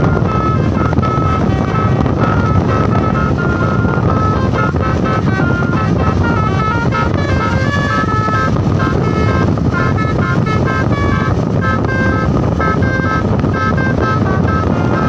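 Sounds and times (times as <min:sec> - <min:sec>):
engine rumble: 0:00.0 - 0:15.0
multi-tone bus horn melody: 0:00.0 - 0:15.0
wind noise: 0:00.0 - 0:15.0.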